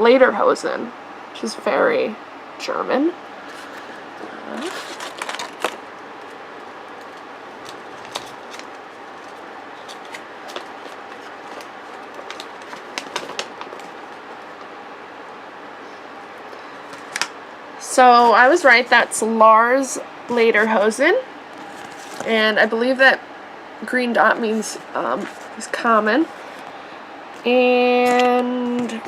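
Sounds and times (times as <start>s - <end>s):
faint room hiss: 0.0s - 29.0s
packaging rustle: 3.4s - 14.8s, 16.8s - 17.3s, 21.5s - 22.3s, 24.4s - 29.0s.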